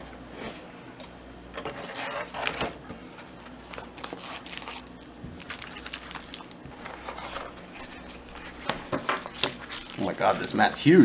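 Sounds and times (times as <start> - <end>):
plastic packaging crinkling: 3.5 - 11.0.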